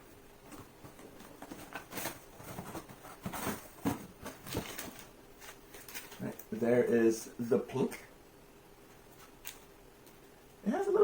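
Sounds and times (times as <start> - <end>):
packaging rustling and crinkling: 0.4 - 6.6.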